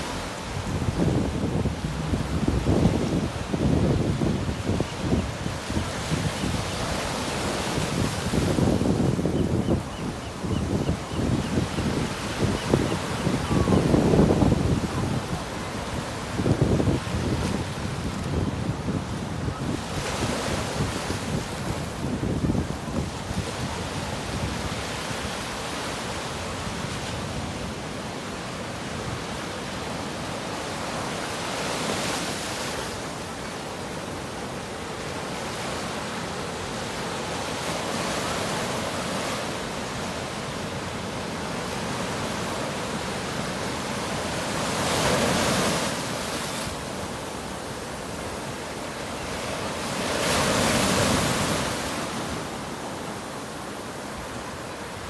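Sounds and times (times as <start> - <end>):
ocean waves washing: 0.0 - 22.6.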